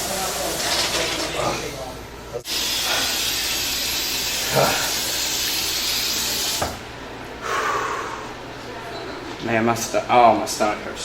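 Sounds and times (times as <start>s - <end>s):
steady hissing rush: 2.5s - 6.8s.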